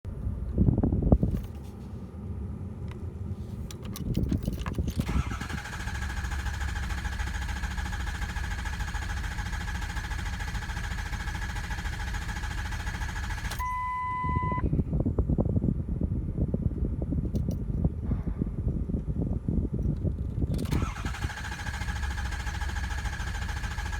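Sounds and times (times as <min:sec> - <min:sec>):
uneven low engine rumble: 0:00.0 - 0:23.9
starter motor cranking engine: 0:04.8 - 0:13.6, 0:20.5 - 0:23.9
beep: 0:13.6 - 0:14.7.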